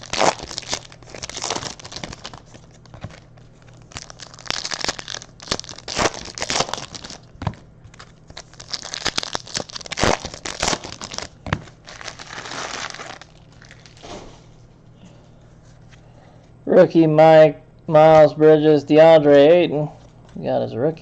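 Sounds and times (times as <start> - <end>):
plastic wrappers tearing and crinkling: 0.0 - 14.3.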